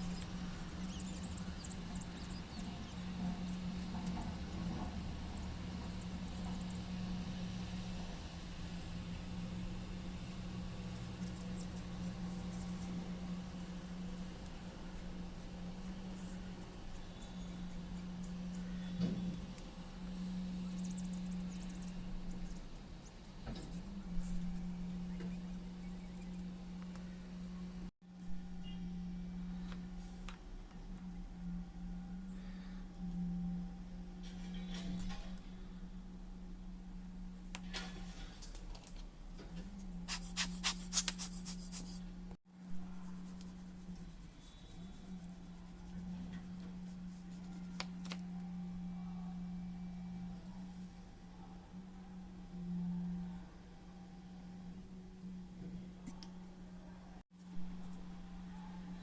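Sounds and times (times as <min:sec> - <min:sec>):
scratching and rubbing: 0:00.0 - 0:06.9, 0:10.8 - 0:19.1, 0:20.7 - 0:26.5, 0:39.6 - 0:42.1, 0:42.8 - 0:48.3
faint high squeaks: 0:00.0 - 0:07.0, 0:10.9 - 0:19.6, 0:20.6 - 0:26.8
steady low hum: 0:00.0 - 0:59.0.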